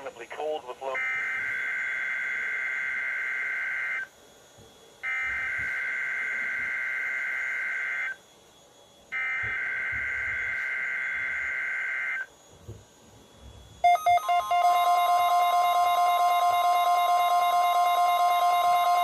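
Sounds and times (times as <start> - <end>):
buzzy two-tone data burst: 5.0 - 12.4, 13.6 - 19.0.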